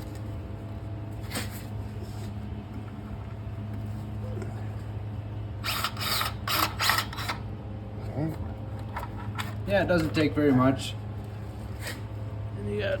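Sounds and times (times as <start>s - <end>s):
low mechanical hum: 0.0s - 13.0s
power grease gun pumping: 5.6s - 7.4s.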